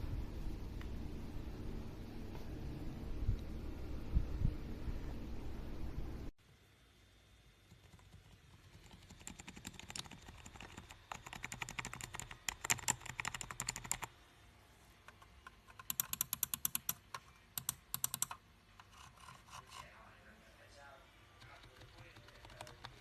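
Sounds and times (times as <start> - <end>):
computer keyboard typing: 7.7 - 14.1, 15.6 - 18.4, 21.4 - 23.0.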